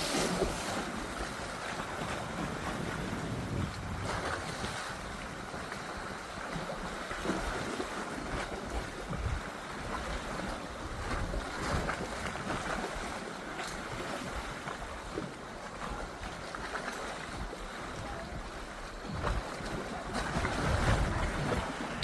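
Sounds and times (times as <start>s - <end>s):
wind buffeting microphone: 0.0s - 13.0s, 17.3s - 22.0s
water rushing around boat: 0.0s - 22.0s
steady low rumble: 2.6s - 5.4s.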